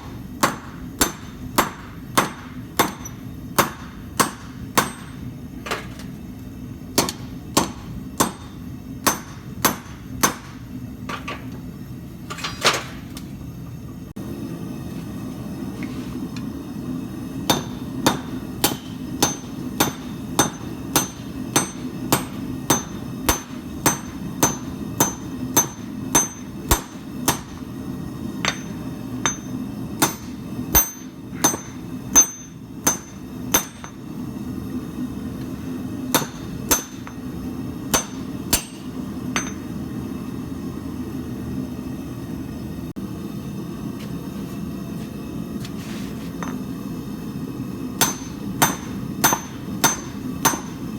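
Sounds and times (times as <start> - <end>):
hammer striking steel on anvil: 0.0 - 6.1, 6.9 - 11.6, 17.4 - 27.7, 28.4 - 34.1, 36.1 - 39.8, 46.4 - 46.8, 48.0 - 50.9
steady low hum: 0.0 - 50.9.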